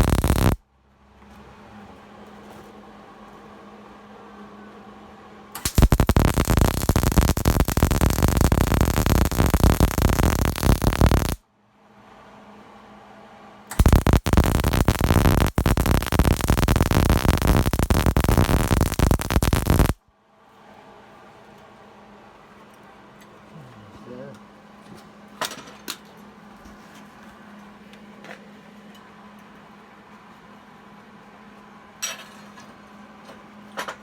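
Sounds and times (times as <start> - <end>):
steady low hum: 0.0 - 0.6, 5.6 - 11.4, 13.7 - 20.0
welding arc crackling: 0.0 - 0.6, 5.6 - 11.4, 13.8 - 20.0.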